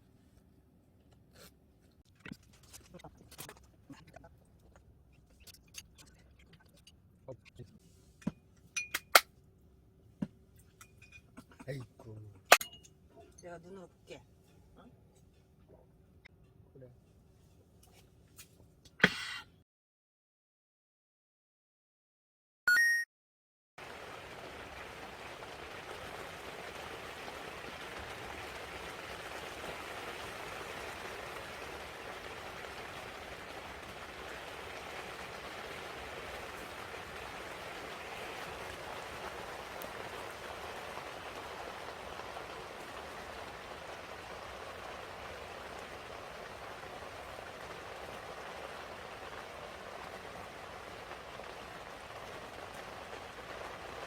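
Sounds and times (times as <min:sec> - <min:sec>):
rain falling: 0:23.8 - 0:54.0.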